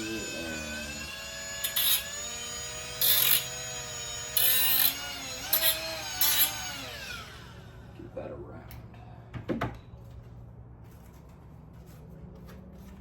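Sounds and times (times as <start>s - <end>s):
tool cutting sheet metal: 0.0s - 7.2s
power cutting tool whining: 0.0s - 7.8s.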